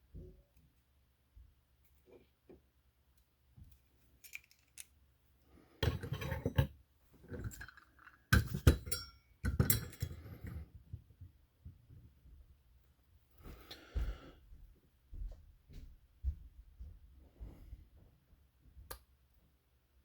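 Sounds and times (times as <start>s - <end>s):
small parts clinking and rattling: 4.1s - 5.0s.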